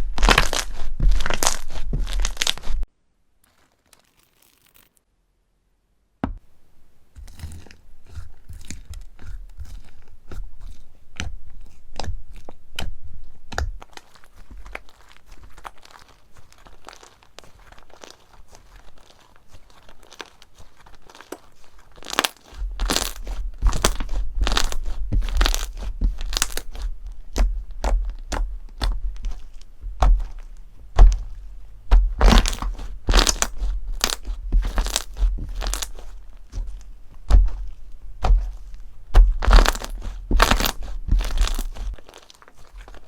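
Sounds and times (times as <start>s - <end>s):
crunchy slime crackling: 0.0s - 5.0s, 7.2s - 43.0s
dull low thuds: 22.6s - 42.0s.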